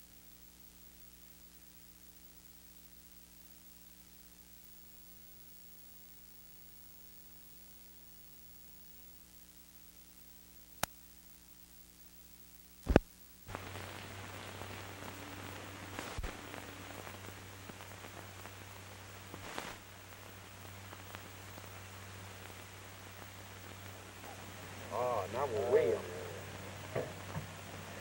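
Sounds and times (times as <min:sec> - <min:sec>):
crackles: 0:00.0 - 0:28.0
steady hiss: 0:00.0 - 0:28.0
low hum: 0:20.0 - 0:28.0.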